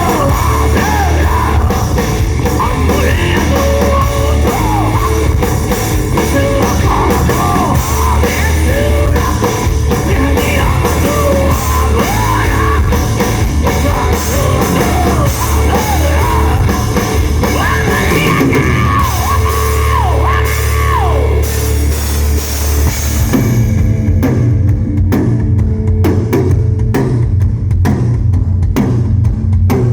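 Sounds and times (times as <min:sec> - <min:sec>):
person singing: 0:00.0 - 0:05.5, 0:06.1 - 0:21.5
distorted electric guitars: 0:00.0 - 0:29.9
drums: 0:00.0 - 0:29.9
heavy bass: 0:00.0 - 0:29.9.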